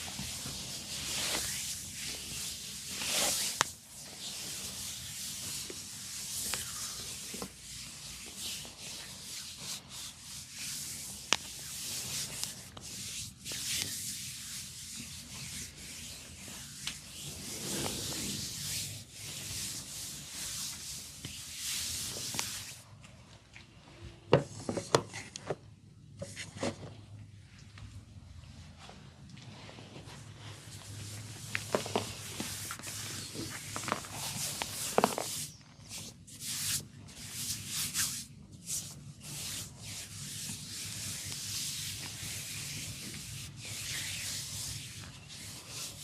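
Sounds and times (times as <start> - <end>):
hands rubbing scalp through hair: 0.0 - 22.8.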